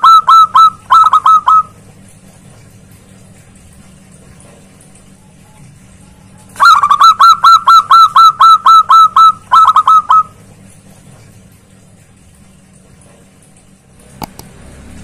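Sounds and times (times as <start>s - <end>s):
dove calling rapid notes: 0.0s - 1.8s, 6.6s - 10.4s.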